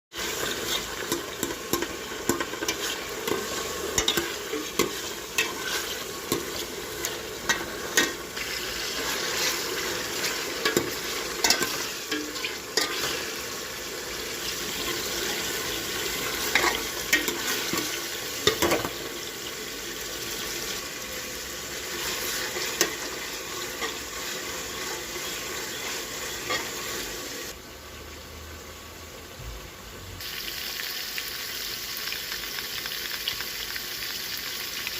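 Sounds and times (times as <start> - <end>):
food sizzling in a pan: 0.1 - 34.9
utensil scraping a pan: 0.3 - 13.5.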